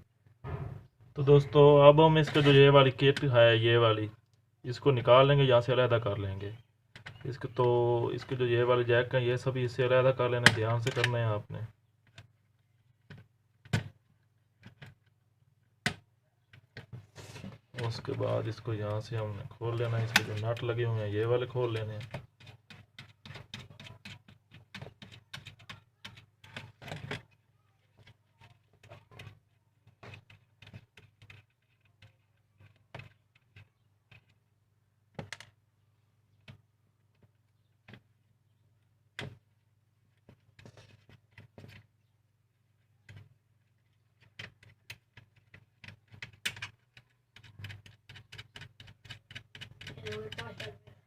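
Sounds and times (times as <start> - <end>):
hand tools clicking on plastic: 17.7 - 34.4, 43.0 - 50.9.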